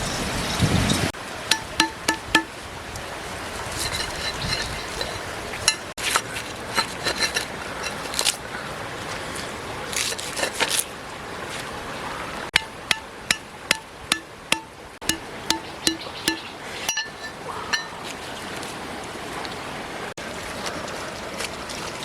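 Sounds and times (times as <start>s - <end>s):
sharp ringing knocks: 1.5s - 2.5s, 12.6s - 18.0s
kitchen utensils clinking: 3.8s - 5.9s, 6.7s - 8.3s, 12.6s - 18.0s.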